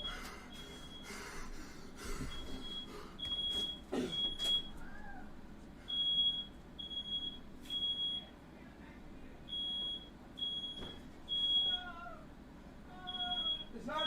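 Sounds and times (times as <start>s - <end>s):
smoke alarm beeping: 0.0s - 1.3s, 2.0s - 4.8s, 5.9s - 8.4s, 9.5s - 11.9s, 13.0s - 14.0s.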